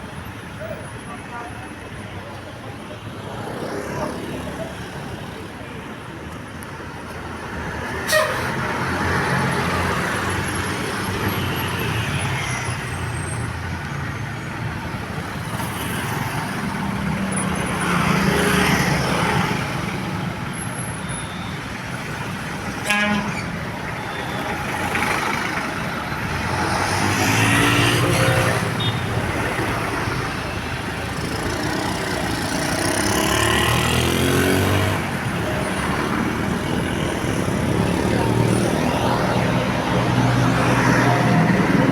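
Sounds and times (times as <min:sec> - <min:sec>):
short horn sounds: 0:08.0 - 0:08.6
heavy vehicles passing: 0:21.7 - 0:41.9.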